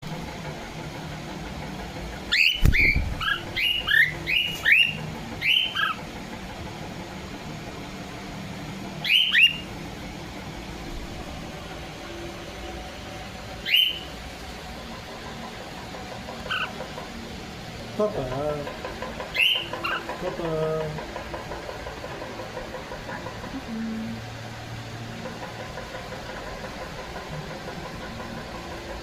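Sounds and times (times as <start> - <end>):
cockatiel chirping: 2.3 - 6.0, 9.0 - 9.7, 13.6 - 14.1, 16.4 - 16.8, 19.3 - 20.0.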